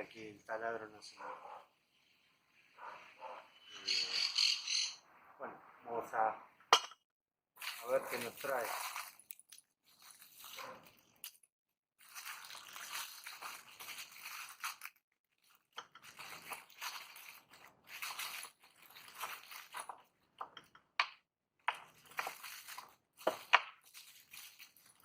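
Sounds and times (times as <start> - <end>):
plastic packaging crinkling: 7.6 - 20.1, 21.8 - 25.0.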